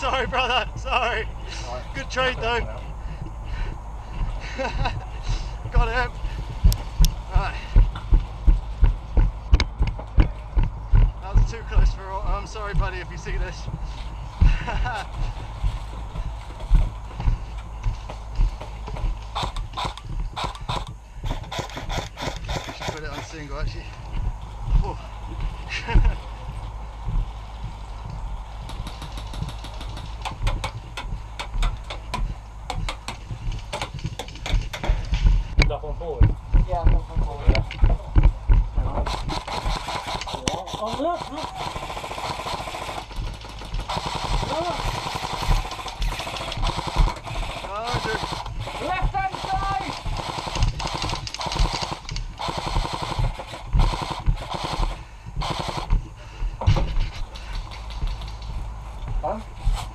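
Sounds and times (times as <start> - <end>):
airsoft guns firing bursts: 4.1 - 8.7, 11.2 - 15.5, 17.2 - 24.2, 27.6 - 31.1, 31.9 - 35.6, 39.0 - 58.6
airsoft gun shots: 39.0 - 56.0.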